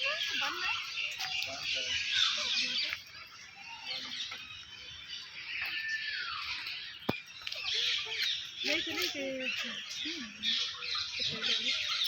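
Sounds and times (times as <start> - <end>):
birds chirping chorus: 0.0 - 12.0.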